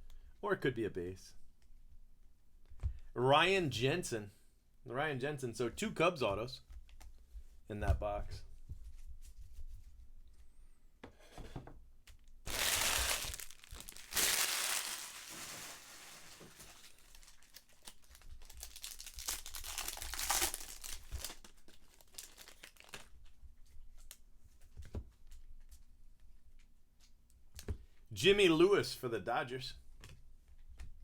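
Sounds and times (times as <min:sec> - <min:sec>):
foil wrapping crinkling: 0:12.5 - 0:23.1
plastic wrapping being torn: 0:12.5 - 0:23.1.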